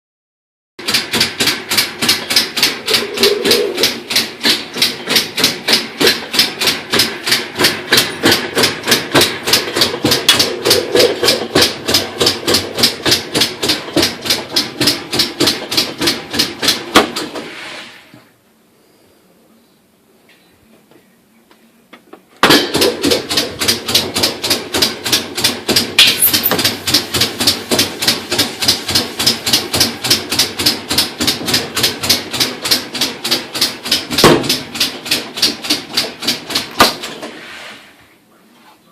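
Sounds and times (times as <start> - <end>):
loud regular clicking: 0.8 - 17.0, 22.7 - 37.1
washing machine running: 0.8 - 17.7, 22.5 - 37.6.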